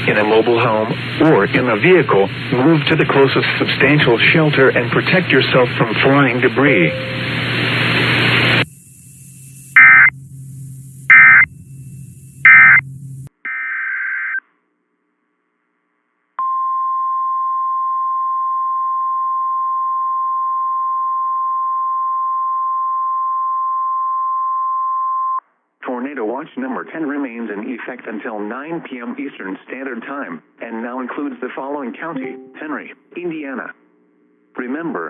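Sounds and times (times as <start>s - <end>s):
radio hiss: 0.0s - 10.1s
screeching digital data bursts: 9.5s - 10.1s, 11.1s - 11.5s, 12.4s - 12.8s
warning alarm tone: 9.7s - 10.2s, 11.1s - 11.5s, 12.4s - 12.9s.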